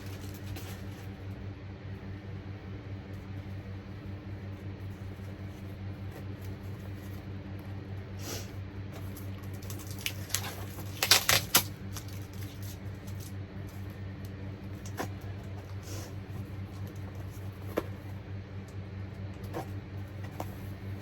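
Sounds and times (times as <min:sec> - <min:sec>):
steady electrical hum: 0:00.0 - 0:21.0
packaging crinkling and clicking: 0:09.0 - 0:15.1.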